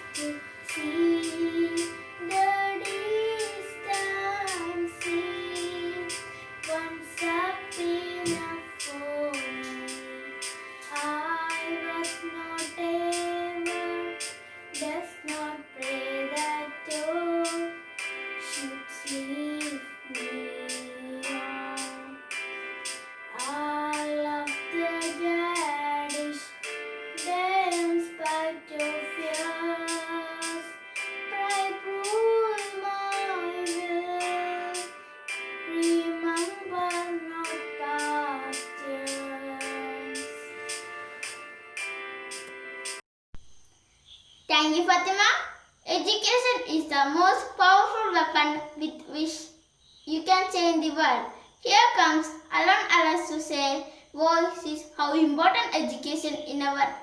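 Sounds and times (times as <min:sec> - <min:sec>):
girl singing: 0:00.0 - 0:22.5, 0:23.3 - 0:40.6, 0:45.9 - 0:49.5, 0:50.1 - 0:57.0
light instrumental accompaniment: 0:00.0 - 0:43.0.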